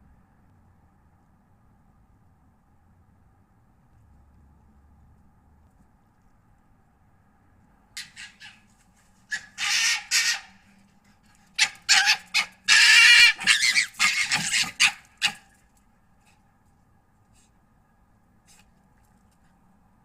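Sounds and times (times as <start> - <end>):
foxes calling: 8.0 - 8.7, 9.3 - 10.8, 11.5 - 15.6.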